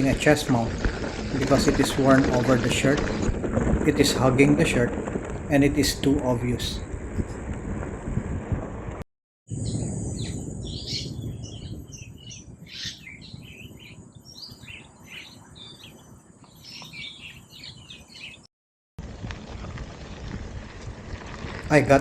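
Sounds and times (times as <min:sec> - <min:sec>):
birds chirping and calling: 0:09.6 - 0:18.5.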